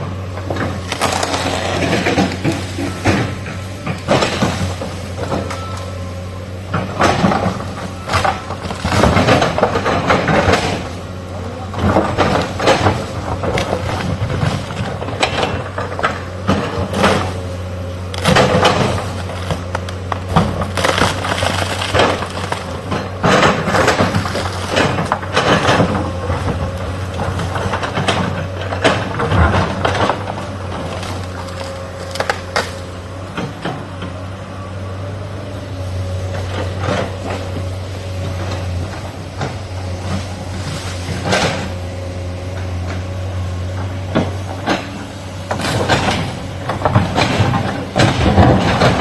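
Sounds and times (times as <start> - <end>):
excavator diesel engine: 0.0 - 49.0.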